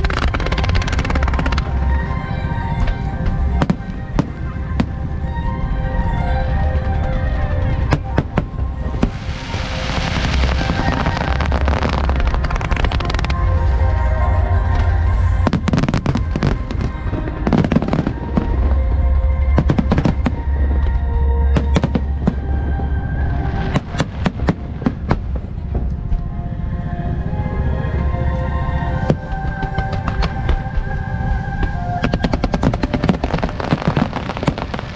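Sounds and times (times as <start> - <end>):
fireworks bangs: 0.0 - 1.8, 7.9 - 13.6, 32.0 - 34.9
fireworks crackling shower: 0.0 - 2.1, 7.1 - 20.4, 29.2 - 34.9
music with low bass: 0.0 - 34.9.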